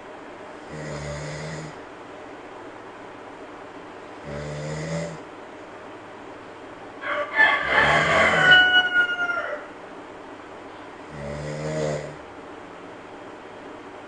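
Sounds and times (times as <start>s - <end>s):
monkey snoring: 0.6s - 1.8s, 4.2s - 5.3s, 11.0s - 12.2s.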